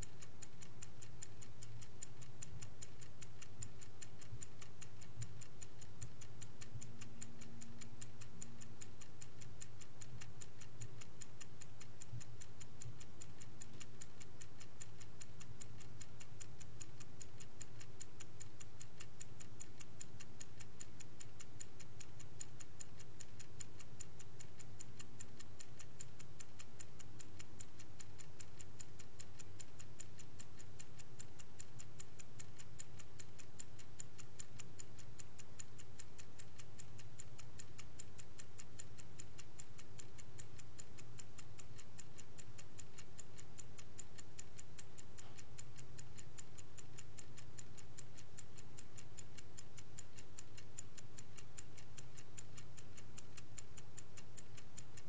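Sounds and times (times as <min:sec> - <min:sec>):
clock ticking: 0:00.0 - 0:55.0
faint low hum: 0:00.0 - 0:55.0.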